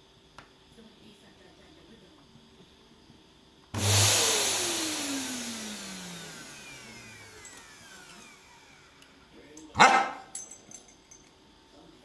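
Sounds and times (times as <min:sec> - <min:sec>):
vacuum cleaner motor whining: 0:03.7 - 0:09.2.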